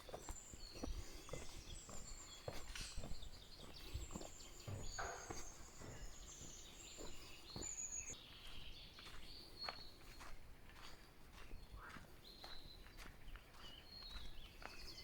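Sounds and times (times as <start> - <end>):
crunches on forest floor: 0.0 - 8.2
birds singing: 0.0 - 15.0.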